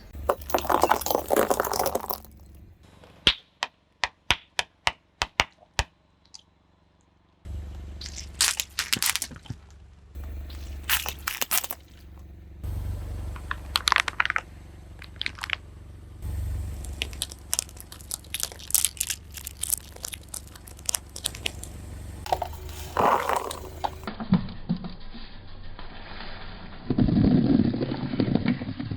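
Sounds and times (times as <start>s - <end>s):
tyre crushing brittle objects: 0.0s - 2.6s, 7.9s - 12.2s, 13.4s - 14.4s, 15.0s - 15.6s, 16.3s - 24.1s
low rumble: 7.5s - 28.9s.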